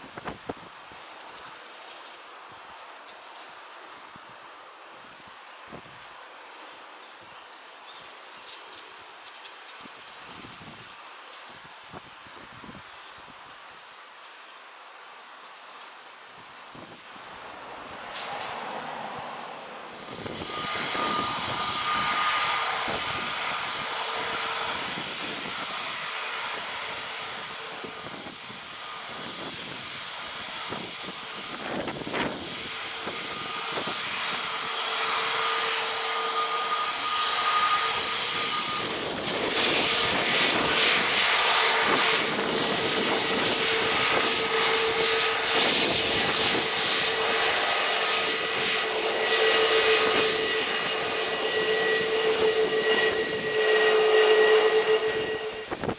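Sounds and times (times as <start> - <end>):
jet engines whining: 16.7 - 55.9.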